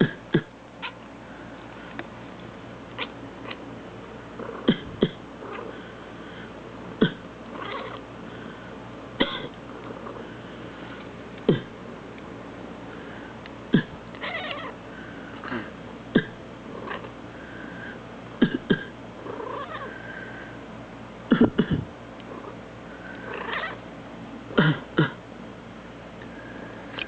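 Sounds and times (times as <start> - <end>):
person coughing: 0.0 - 0.5, 4.7 - 5.2, 7.0 - 7.3, 9.2 - 9.6, 11.5 - 11.7, 13.7 - 14.0, 15.5 - 16.4, 18.4 - 19.0, 21.3 - 21.9, 24.6 - 25.2
cat meowing and chirping: 3.0 - 3.6, 14.2 - 14.8, 23.4 - 23.8.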